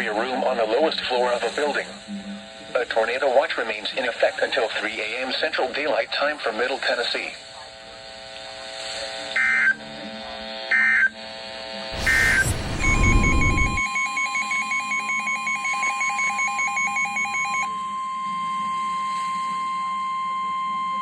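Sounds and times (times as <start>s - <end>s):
buzzy digital data bursts: 12.0s - 13.8s
static rush: 12.0s - 13.8s
steady alert tone: 12.0s - 13.9s
fast beeping alarm: 12.0s - 21.0s.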